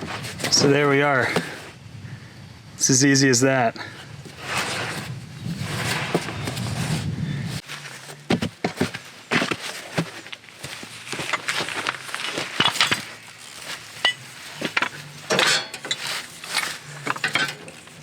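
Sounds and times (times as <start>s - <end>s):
metal tools clinking: 8.8s - 18.0s.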